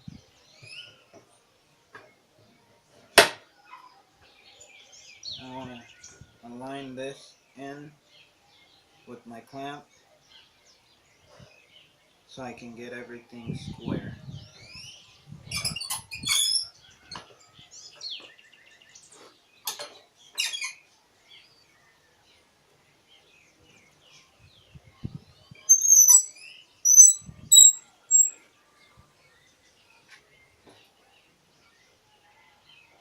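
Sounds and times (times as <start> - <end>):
high squeaks: 25.7 - 28.4.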